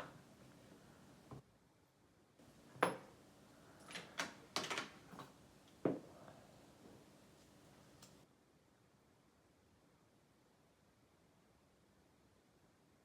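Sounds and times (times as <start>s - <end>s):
metal lock parts clicking: 3.8s - 5.3s.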